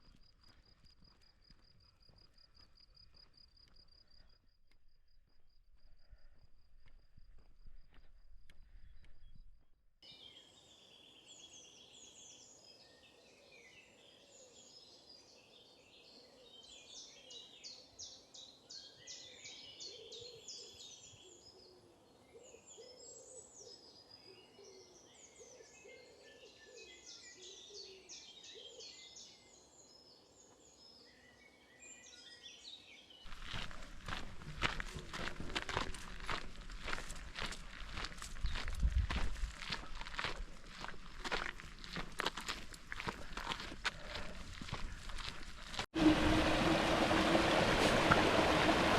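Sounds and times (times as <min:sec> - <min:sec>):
songbirds chirping and trilling: 0:10.0 - 0:34.2
loud footsteps: 0:33.3 - 0:45.9.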